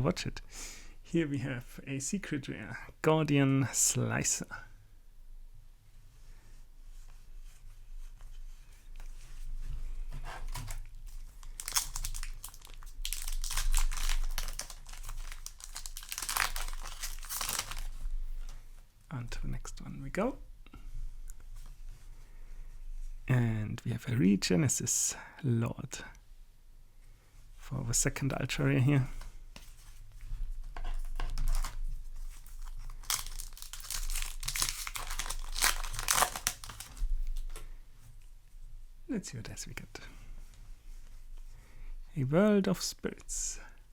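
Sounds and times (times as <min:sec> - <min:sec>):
foil wrapper crinkling and tearing: 0:10.5 - 0:18.0, 0:31.1 - 0:37.6.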